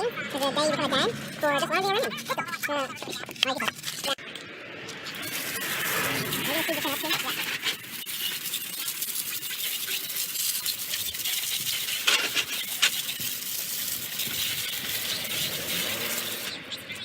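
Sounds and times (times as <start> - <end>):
brush scrubbing a wet tire: 5.0 - 16.6.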